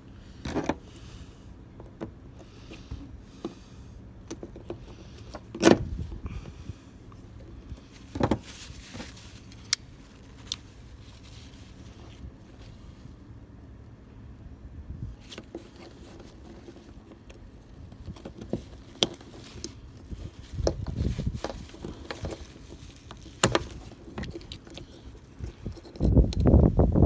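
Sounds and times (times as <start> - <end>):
faint steady hum: 0.0 - 27.0
switch and wiring handling noise: 8.2 - 10.7, 20.5 - 26.6.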